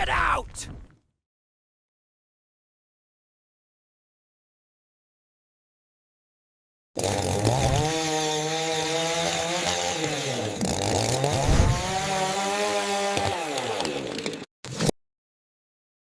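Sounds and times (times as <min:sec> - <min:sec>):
small engine revving with rasp: 0:07.0 - 0:14.5.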